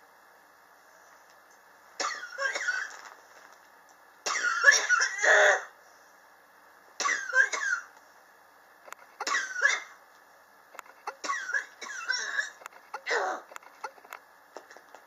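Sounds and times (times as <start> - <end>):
person coughing: 4.3 - 5.7, 11.1 - 13.5.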